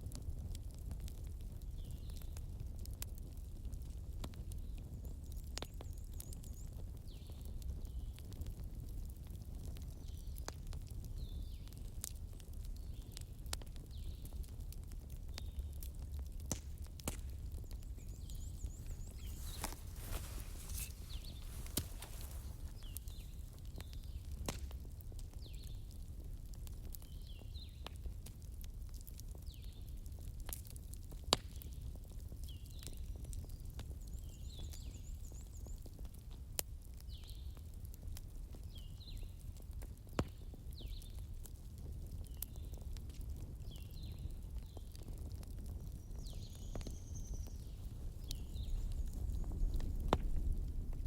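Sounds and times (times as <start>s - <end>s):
campfire crackling: 0.0s - 51.0s
fire pops and snaps: 0.0s - 51.0s
forest bird chirping: 17.7s - 23.6s.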